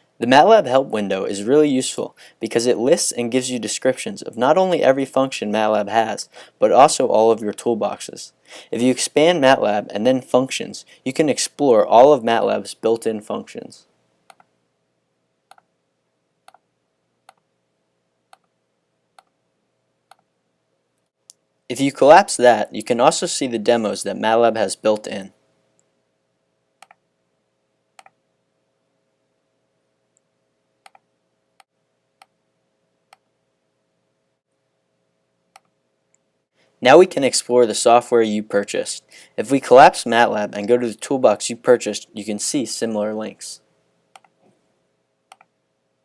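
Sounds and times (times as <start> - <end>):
computer mouse clicks: 26.8 - 27.0, 30.8 - 31.0, 44.1 - 44.4, 45.3 - 45.5.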